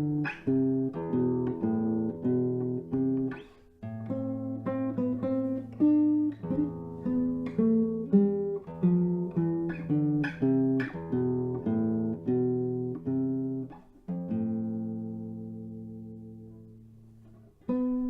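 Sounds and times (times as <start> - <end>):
solo guitar playing: 0.0 - 18.0.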